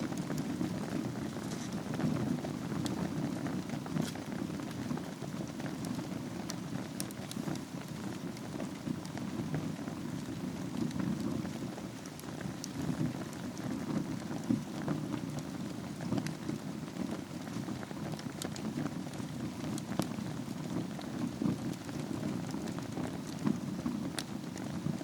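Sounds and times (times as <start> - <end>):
fire flame rushing: 0.0 - 25.0
wood crackling and popping: 0.0 - 25.0.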